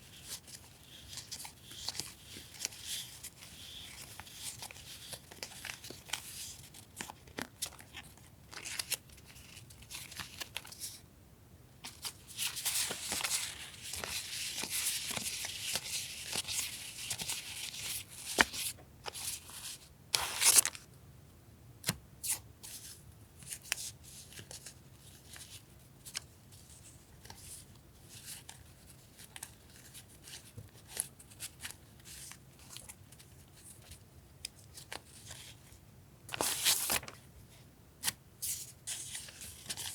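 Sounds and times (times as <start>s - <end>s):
paper sheets rustling: 36.3s - 37.2s.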